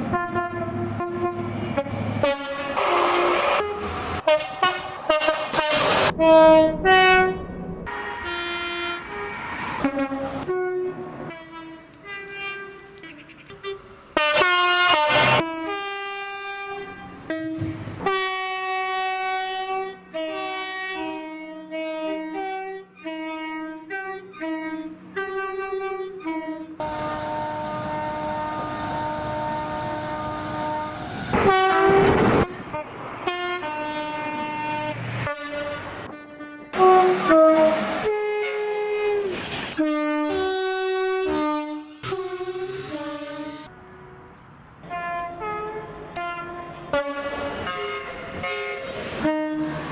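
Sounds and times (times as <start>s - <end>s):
two-tone train horn blasts: 0.0s - 49.9s
steady rushing noise: 31.3s - 33.2s.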